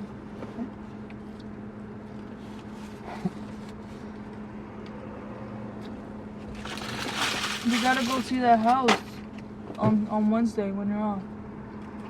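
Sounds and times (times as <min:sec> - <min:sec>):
low mechanical hum: 0:00.0 - 0:12.0.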